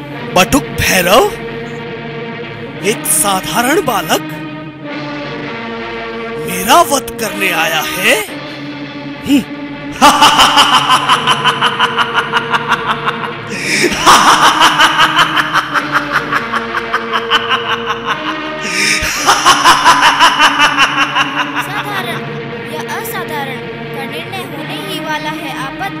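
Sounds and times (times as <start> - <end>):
background music drone: 0.0 - 26.0
villain laughing: 10.0 - 22.3.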